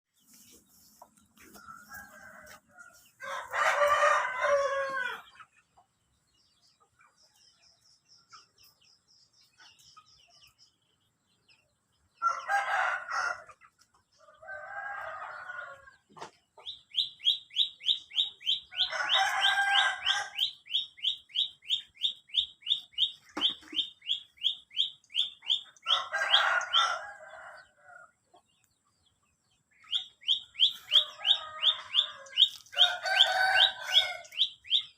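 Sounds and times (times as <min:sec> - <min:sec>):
rooster crowing: 0:01.6 - 0:05.2, 0:12.2 - 0:13.5, 0:18.8 - 0:20.5, 0:25.9 - 0:27.8, 0:30.7 - 0:34.4
small bird chirping: 0:16.2 - 0:26.9, 0:28.3 - 0:34.9.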